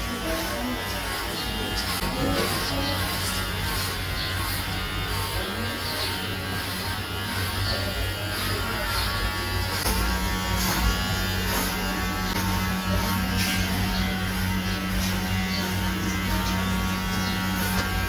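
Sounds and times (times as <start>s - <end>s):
electric hair clippers buzzing: 0.0s - 18.0s.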